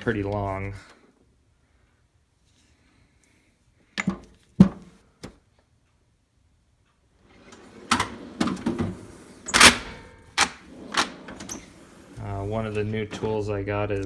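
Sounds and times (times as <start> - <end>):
tool box drawers sliding and clunking: 7.2 - 14.0
tools clicking into metal drawer: 7.3 - 12.2.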